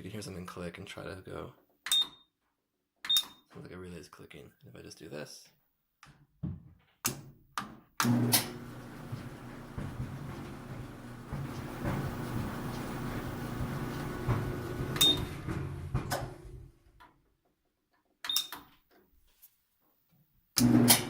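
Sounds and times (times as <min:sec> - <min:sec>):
dryer motor and drum humming: 0:08.0 - 0:16.7, 0:20.6 - 0:21.0.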